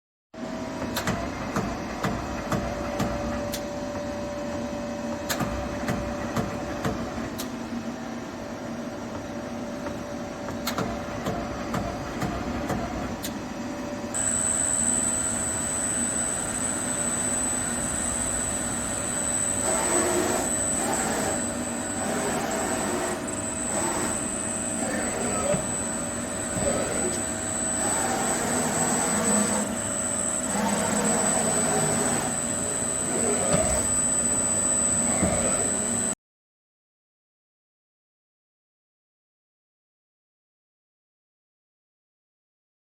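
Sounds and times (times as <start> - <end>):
lathe machine hum: 14.2 - 34.0
high-pitched whine: 14.2 - 36.2.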